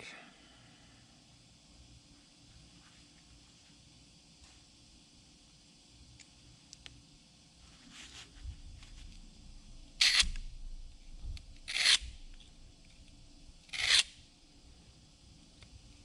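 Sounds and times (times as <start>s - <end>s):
hand tool scraping: 13.7s - 14.1s.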